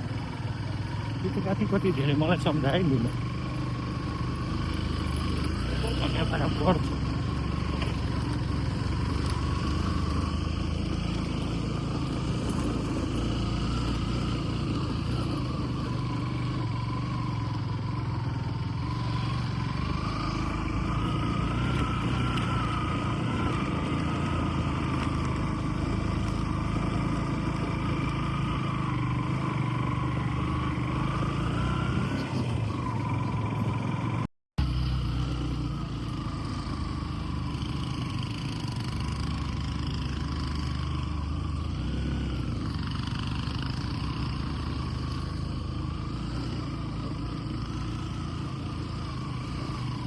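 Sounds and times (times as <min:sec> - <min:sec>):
vehicle engine and road noise: 0:00.0 - 0:50.0.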